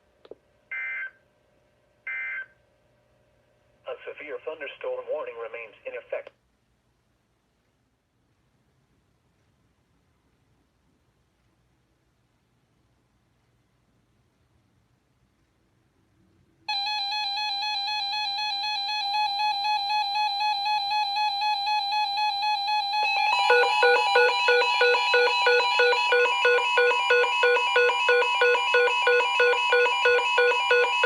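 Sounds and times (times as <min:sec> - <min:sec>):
rapid pulsing beeps: 0:16.7 - 0:31.0
steady buzzy tone: 0:16.7 - 0:31.0.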